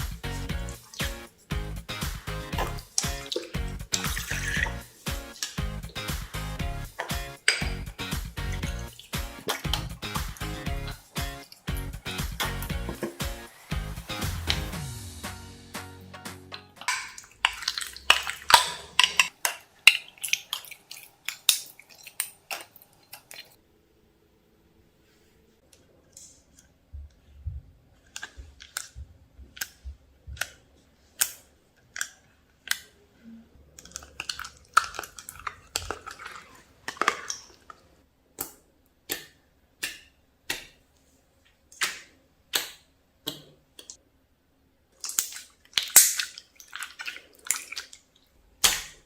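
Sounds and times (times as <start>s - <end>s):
slime squeezed popping wetly: 0.1s - 13.1s, 16.8s - 19.3s, 45.0s - 48.0s, 48.6s - 49.0s.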